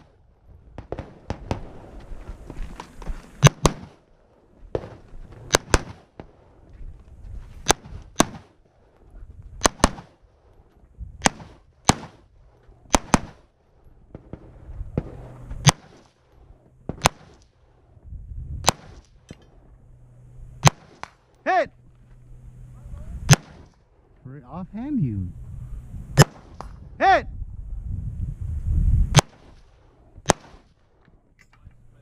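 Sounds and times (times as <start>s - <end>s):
rifle shots: 3.4s - 4.0s, 4.7s - 6.3s, 7.6s - 8.6s, 9.6s - 10.2s, 11.2s - 12.3s, 12.9s - 13.5s, 14.1s - 16.2s, 16.8s - 17.6s, 18.6s - 19.7s, 20.6s - 21.3s, 23.3s - 23.8s, 26.2s - 26.8s, 29.1s - 30.8s
low rumbling handling noise: 17.8s - 26.9s.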